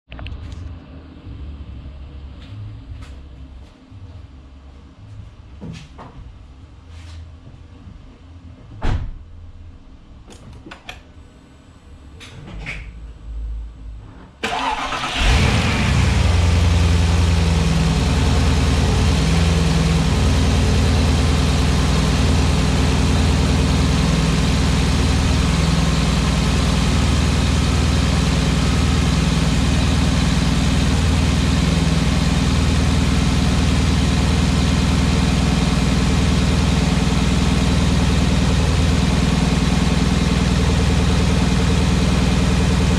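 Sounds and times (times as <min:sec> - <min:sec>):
car engine starting and idling: 0:14.4 - 0:42.9.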